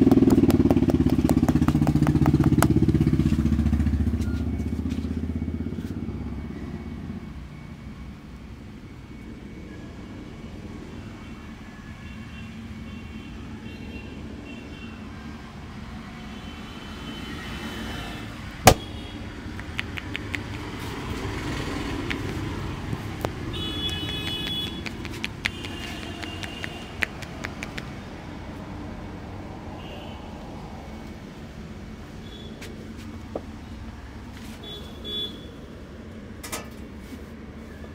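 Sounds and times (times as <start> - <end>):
motorbike passing: 0.0 - 8.1, 17.0 - 34.7
traffic hum: 0.0 - 37.9
sharp snap: 18.7 - 20.8, 23.2 - 28.0
car horn toots: 23.5 - 27.0, 34.6 - 35.6.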